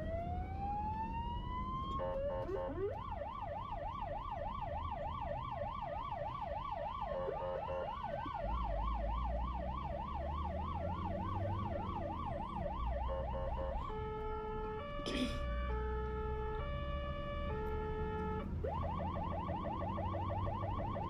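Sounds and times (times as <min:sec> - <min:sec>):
low traffic rumble: 0:00.0 - 0:21.0
siren yelping: 0:00.0 - 0:21.0
wailing siren: 0:00.0 - 0:21.0.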